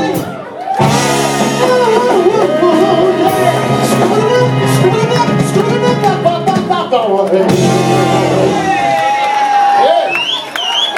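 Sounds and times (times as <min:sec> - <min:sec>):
cover band playing: 0:00.0 - 0:10.3
lead singer singing: 0:01.4 - 0:08.7.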